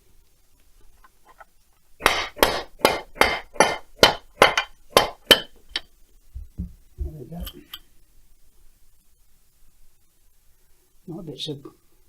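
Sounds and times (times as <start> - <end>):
hammer striking metal: 2.0 - 5.6.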